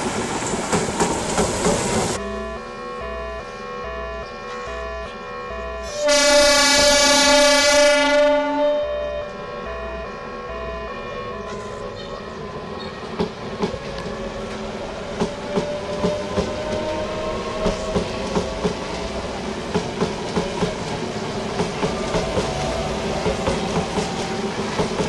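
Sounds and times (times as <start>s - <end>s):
train wheels clacking on rail joints: 0.0s - 2.2s, 12.8s - 25.0s
train running noise: 0.0s - 25.0s.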